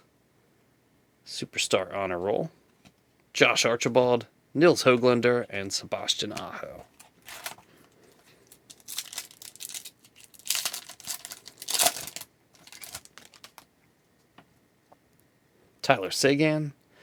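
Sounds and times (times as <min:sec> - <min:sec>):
card pack wrapper tearing: 0:07.0 - 0:07.6, 0:08.5 - 0:13.7.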